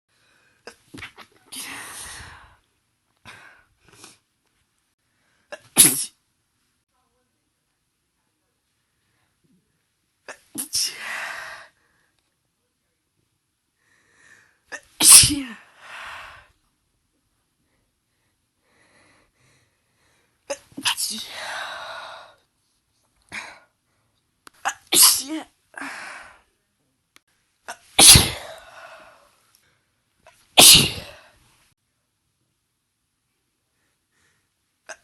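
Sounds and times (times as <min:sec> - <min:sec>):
woman sneezing: 0:05.6 - 0:06.2, 0:14.8 - 0:15.6, 0:24.6 - 0:25.5, 0:27.9 - 0:28.6, 0:30.6 - 0:31.2.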